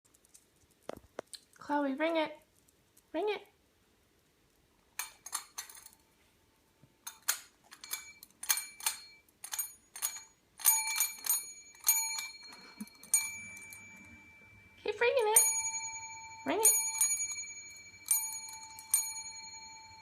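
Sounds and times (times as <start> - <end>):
small metal bell ringing: 7.1 - 20.0.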